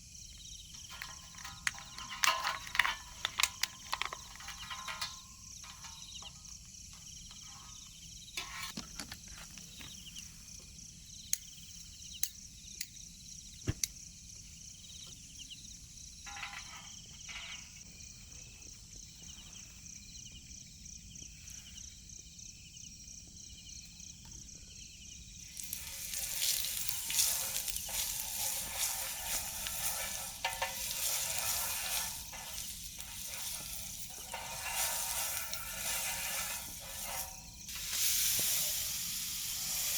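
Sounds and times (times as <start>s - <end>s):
food sizzling in hot oil: 25.4s - 39.9s.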